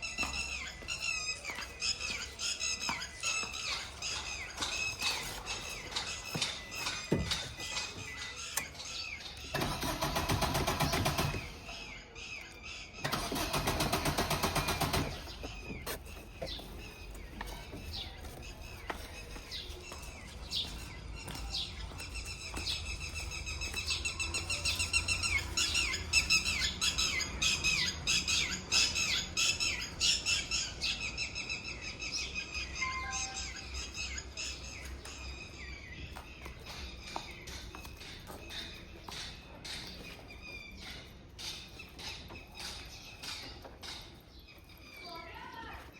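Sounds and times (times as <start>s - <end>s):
birds chirping: 0.0s - 45.9s
car starter cranking engine: 8.1s - 11.9s, 13.0s - 15.9s.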